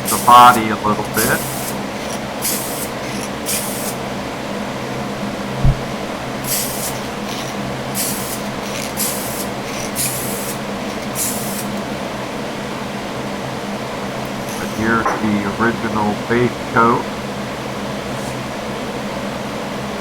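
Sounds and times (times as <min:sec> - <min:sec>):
spray paint hissing bursts: 0:00.0 - 0:00.5, 0:01.1 - 0:04.0, 0:06.4 - 0:11.8, 0:14.3 - 0:14.8
fan humming: 0:00.0 - 0:20.0
dull thump: 0:05.6 - 0:06.0.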